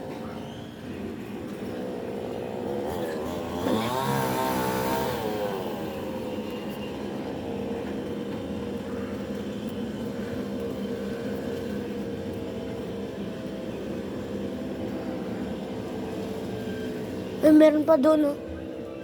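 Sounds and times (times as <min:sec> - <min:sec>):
chainsaw engine at high revs: 0:02.5 - 0:06.5.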